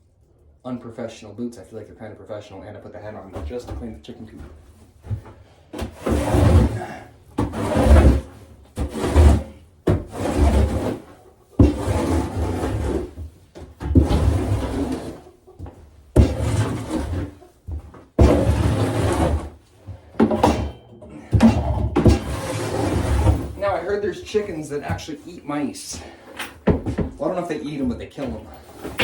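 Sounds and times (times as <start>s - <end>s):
hand tool scraping bedding on floor: 5.0s - 26.3s, 27.2s - 29.0s.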